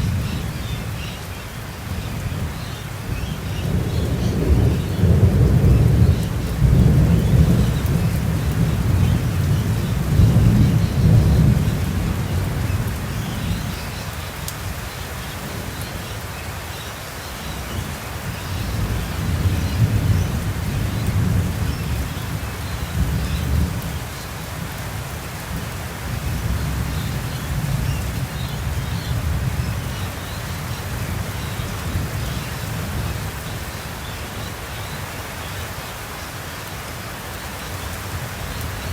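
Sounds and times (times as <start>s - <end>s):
heavy rain: 0.0s - 38.9s
low thunder rumbling: 1.9s - 13.7s.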